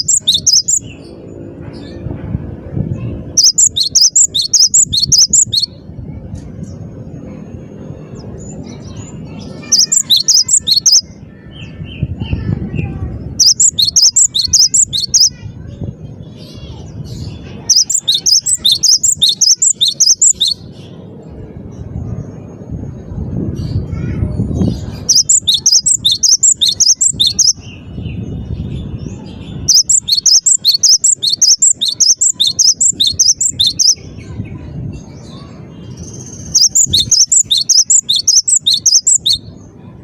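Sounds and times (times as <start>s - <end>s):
bird singing rapid high notes: 0.0s - 1.1s, 3.0s - 5.9s, 8.2s - 12.5s, 13.3s - 15.6s, 16.2s - 21.0s, 23.8s - 39.6s
low background rumble: 0.0s - 40.0s.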